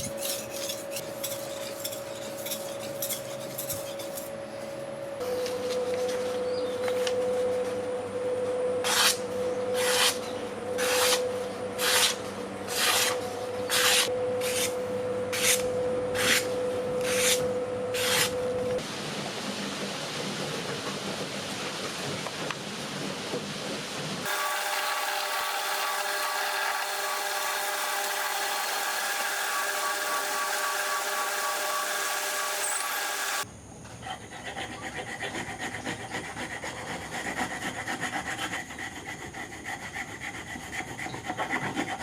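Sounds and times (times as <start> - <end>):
hand tool rasping on steel: 0.0 - 4.3.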